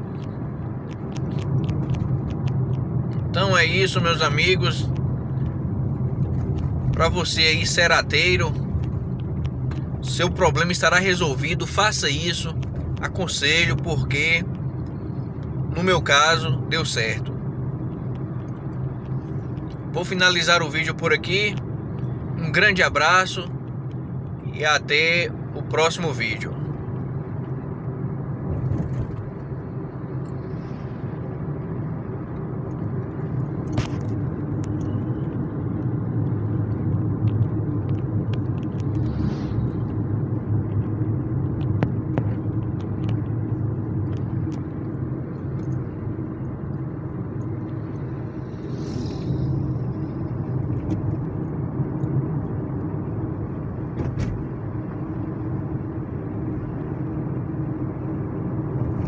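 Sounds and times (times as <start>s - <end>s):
road and engine rumble: 0.0s - 59.0s.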